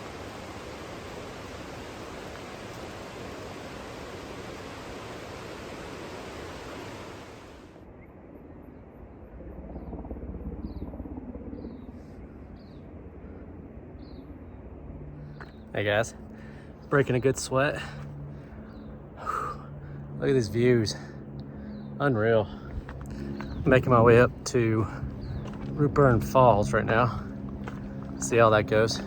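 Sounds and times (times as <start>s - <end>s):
fast-flowing water rushing: 0.0s - 7.6s
wind rumble on microphone: 19.8s - 29.0s.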